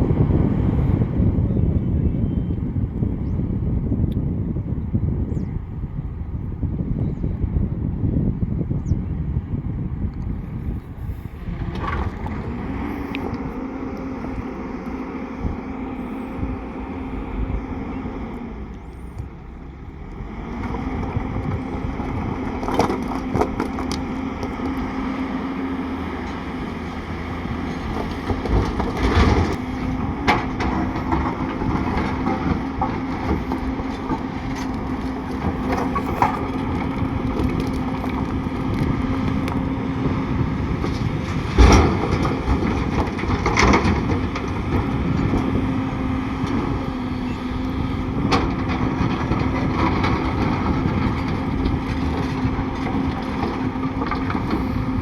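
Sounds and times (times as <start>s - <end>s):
heavy diesel machinery running: 0.0s - 55.0s
clanks and crunches of stone: 20.6s - 24.9s, 30.2s - 45.7s.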